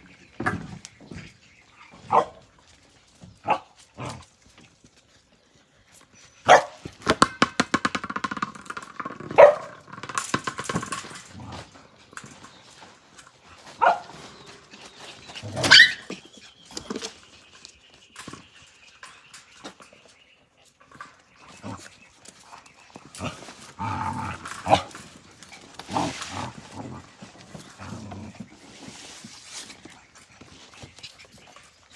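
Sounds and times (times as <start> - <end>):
puppies yapping and barking: 8.9 - 27.8.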